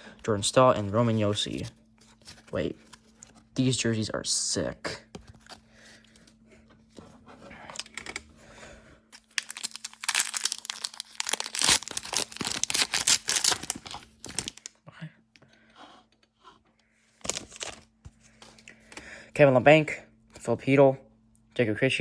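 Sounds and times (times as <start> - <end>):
card pack wrapper tearing: 9.2 - 14.7, 17.2 - 17.9
rustling of cards: 9.2 - 14.7, 17.2 - 18.7.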